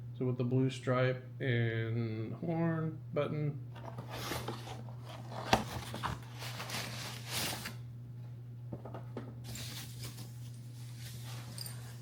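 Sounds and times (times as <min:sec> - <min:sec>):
steady low hum: 0:00.0 - 0:12.0
packaging rustling and tearing: 0:03.9 - 0:07.8.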